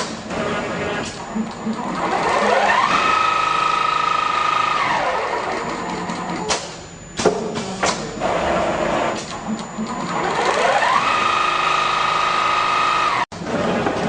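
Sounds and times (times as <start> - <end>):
sewing machine motor whining: 0.4 - 6.5, 8.2 - 13.3.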